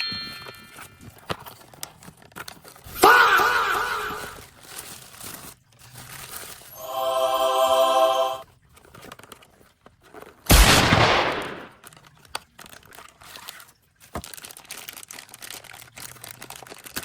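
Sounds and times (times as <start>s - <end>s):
packaging crinkling and tearing: 1.0s - 2.9s, 3.8s - 6.8s, 8.7s - 10.5s, 11.7s - 17.0s
steady held tone: 6.8s - 8.4s.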